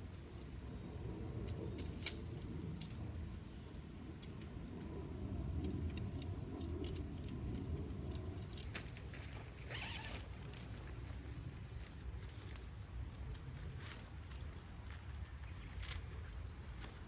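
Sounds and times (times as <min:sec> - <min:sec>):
handling clicks and rustles: 0:00.0 - 0:17.0
rasping zipper-like pull: 0:09.6 - 0:10.3.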